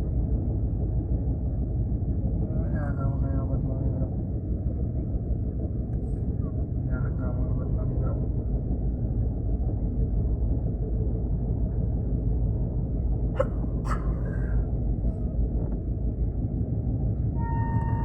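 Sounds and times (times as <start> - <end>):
train rumbling: 0.0 - 18.0
steady high tone: 17.4 - 18.0.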